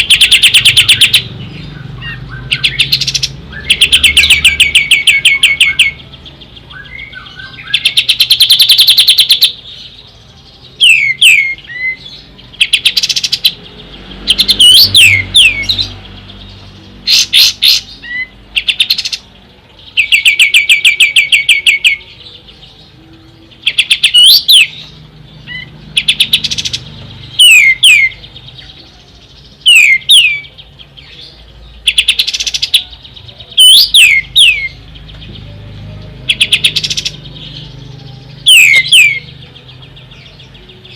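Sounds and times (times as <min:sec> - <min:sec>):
bird trilling: 0:00.0 - 0:10.0, 0:10.8 - 0:22.9, 0:23.5 - 0:40.9.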